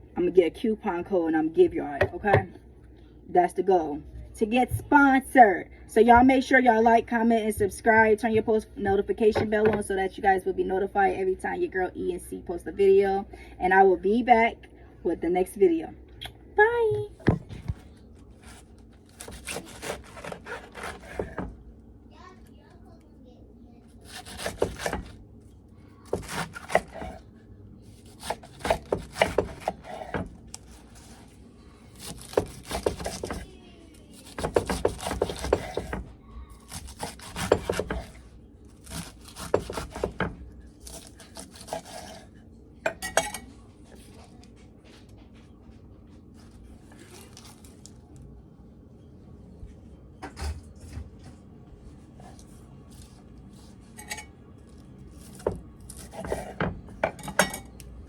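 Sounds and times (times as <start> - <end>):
kitchen dishes and utensils clinking: 42.9 - 43.6, 53.9 - 54.4, 55.4 - 57.8.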